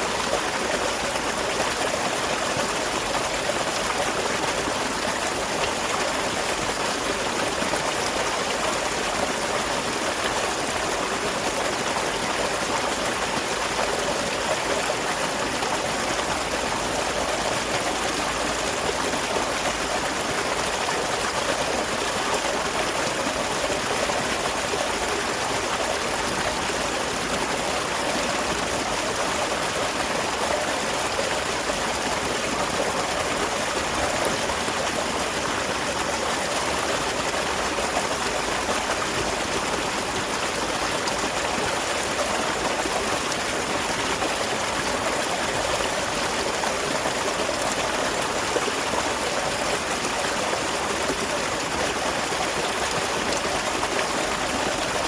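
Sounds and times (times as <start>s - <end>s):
small waterfall splashing: 0.0s - 55.0s.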